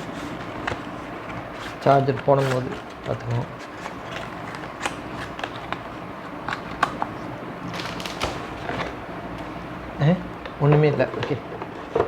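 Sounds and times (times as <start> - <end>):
packaging rustling: 0.1 - 9.0.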